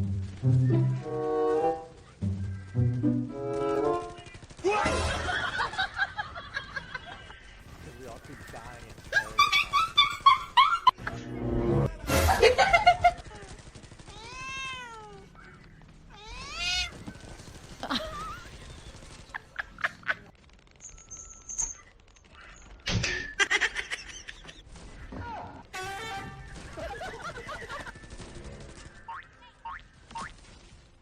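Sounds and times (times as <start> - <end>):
cat meowing: 14.1 - 15.3, 16.1 - 16.9.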